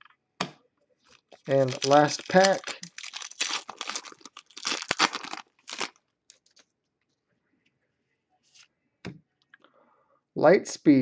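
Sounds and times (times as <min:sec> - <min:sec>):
foil wrapper tearing and crinkling: 0:01.1 - 0:06.6.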